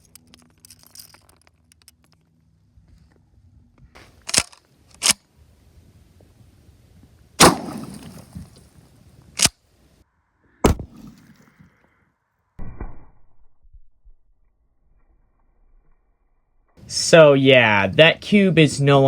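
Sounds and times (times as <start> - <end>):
sharp bangs: 7.4 - 8.6.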